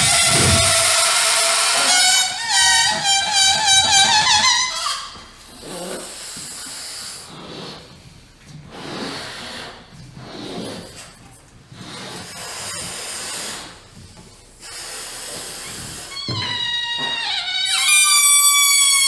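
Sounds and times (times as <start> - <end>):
loud hissing drone: 0.0 - 3.0.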